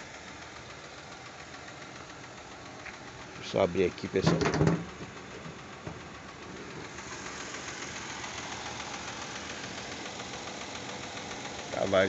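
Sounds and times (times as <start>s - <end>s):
car engine idling: 0.0s - 12.0s
fast even valvetrain ticking: 4.9s - 12.0s.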